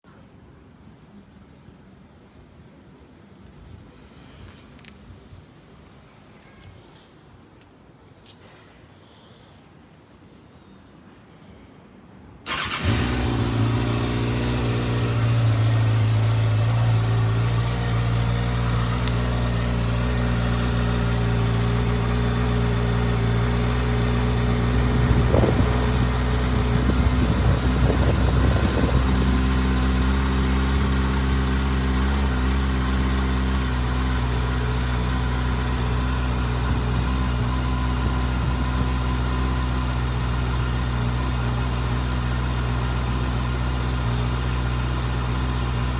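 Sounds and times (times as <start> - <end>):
motorcycle engine starting and idling: 12.4 - 45.9.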